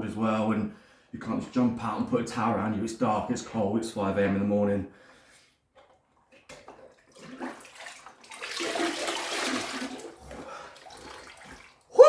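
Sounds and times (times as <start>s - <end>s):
water pouring and splashing: 5.8s - 12.0s.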